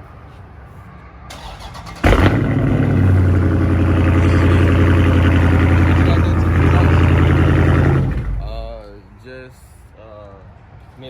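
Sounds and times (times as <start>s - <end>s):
car engine starting and idling: 1.3s - 9.2s.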